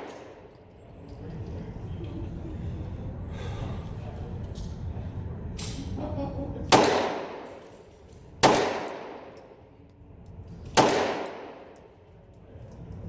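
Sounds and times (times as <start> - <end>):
pistol shots with echo: 0.0 - 0.5, 6.7 - 7.7, 8.4 - 9.5, 10.7 - 11.8.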